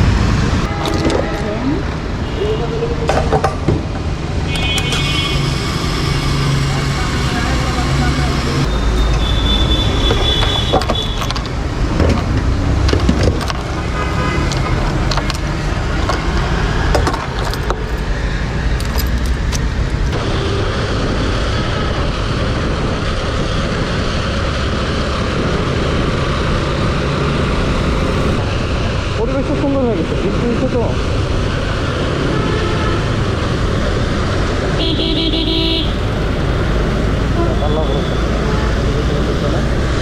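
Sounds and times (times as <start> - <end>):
traffic noise: 0.0 - 40.0
clicks and knocks: 3.1 - 5.0, 10.0 - 13.8, 14.4 - 18.1
motorcycle engine running: 4.4 - 11.2.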